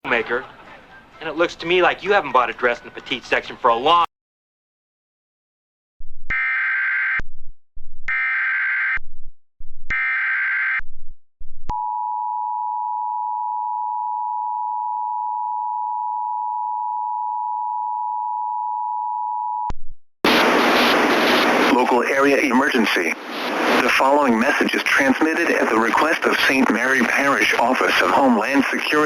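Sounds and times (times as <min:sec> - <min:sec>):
buzzy digital data tones: 0:20.3 - 0:25.2.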